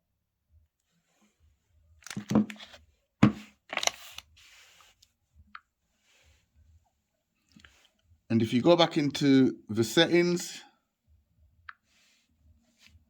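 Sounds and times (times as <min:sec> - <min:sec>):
smartphone handling rustles: 0:02.0 - 0:05.0.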